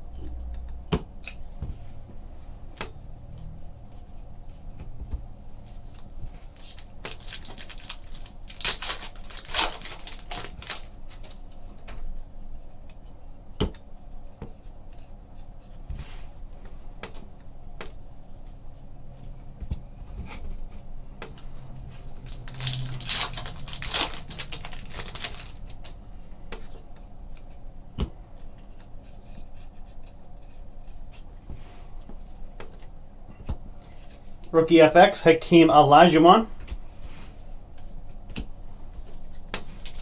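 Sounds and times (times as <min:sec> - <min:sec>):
cards rustling: 0:05.8 - 0:11.9, 0:21.2 - 0:26.2, 0:39.3 - 0:40.0
cards flipped on a table: 0:22.1 - 0:26.6.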